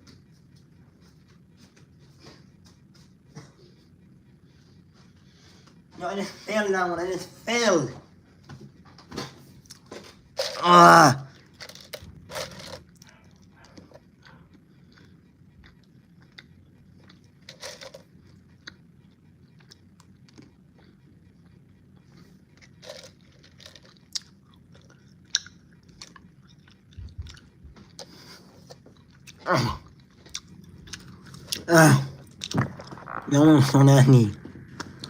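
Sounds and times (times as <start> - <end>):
person chewing: 11.3 - 33.2.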